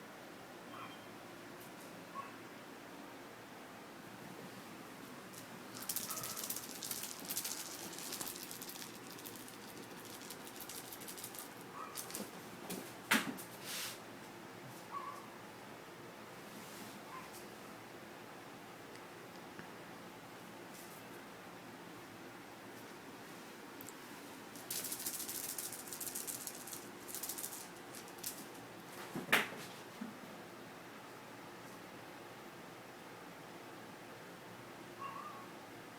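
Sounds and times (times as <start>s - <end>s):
cat toy rattling: 5.3s - 12.3s, 24.6s - 28.6s.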